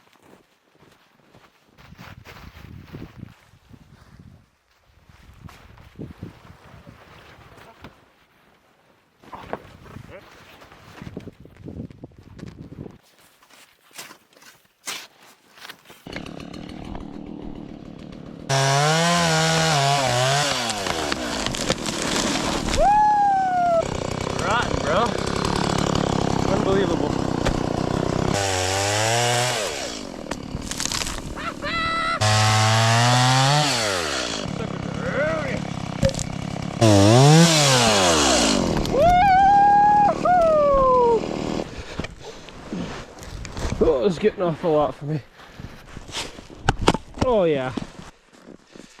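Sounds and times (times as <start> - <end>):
chainsaw engine revving: 16.1 - 22.8, 23.6 - 39.0, 40.1 - 41.8.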